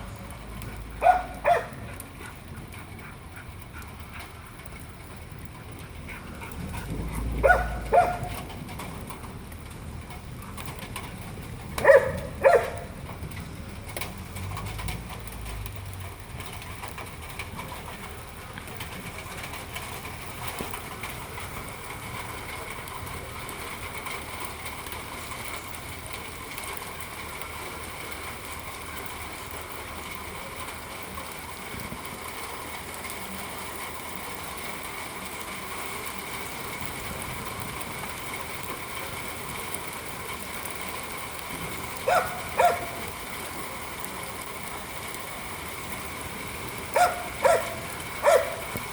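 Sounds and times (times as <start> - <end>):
dog barking: 1.0 - 1.9, 7.4 - 8.4, 11.8 - 12.9, 42.1 - 43.0, 47.0 - 48.7.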